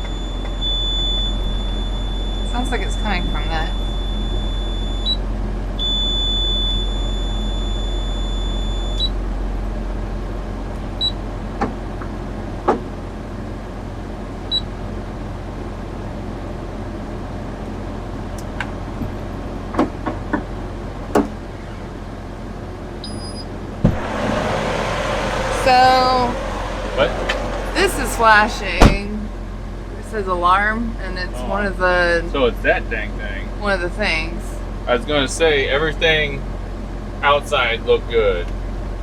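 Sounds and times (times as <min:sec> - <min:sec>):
high-pitched electronic beep: 0:00.0 - 0:05.2, 0:05.8 - 0:09.1
low engine hum: 0:00.0 - 0:39.0.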